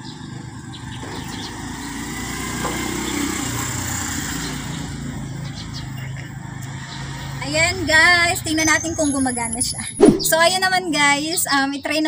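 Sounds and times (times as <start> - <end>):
vehicle passing on road: 0.0 - 9.2.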